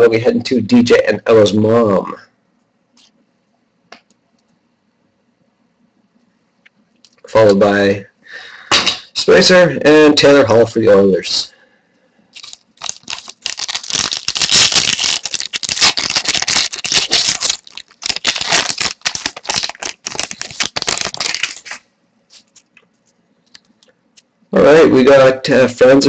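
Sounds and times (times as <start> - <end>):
wrapper crinkling and tearing: 12.4 - 22.7.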